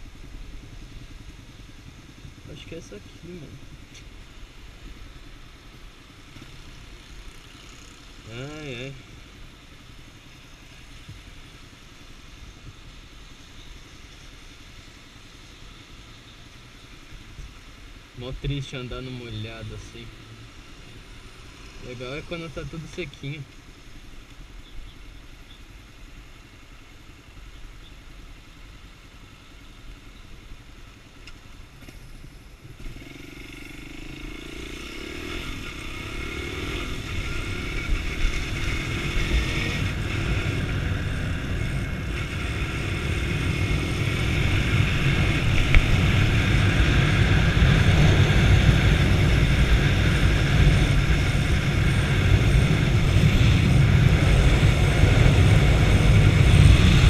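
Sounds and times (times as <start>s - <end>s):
motorcycle engine: 31.8s - 57.0s.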